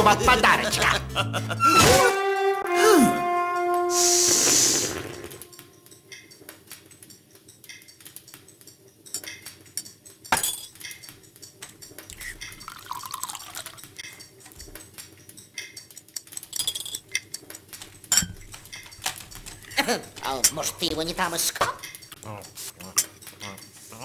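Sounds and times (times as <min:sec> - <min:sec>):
loud crash: 0:01.6 - 0:05.4
short falling tone: 0:01.6 - 0:05.6
light clicks and clinks: 0:05.6 - 0:24.0.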